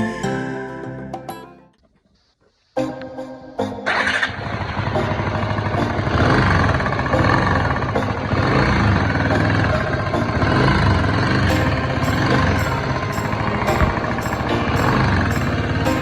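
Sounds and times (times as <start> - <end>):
motorcycle engine running: 4.1 - 16.0.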